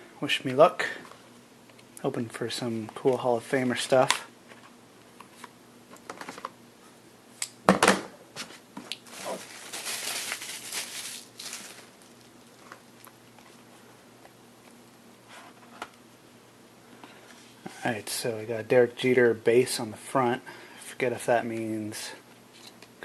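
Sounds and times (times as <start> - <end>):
card pack rustling: 8.9 - 12.9.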